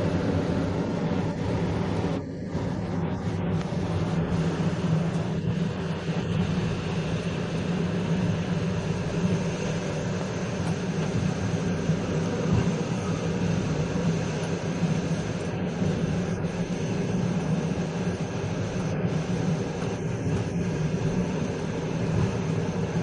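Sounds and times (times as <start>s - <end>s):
train rumble and rail noise: 0.0s - 23.0s.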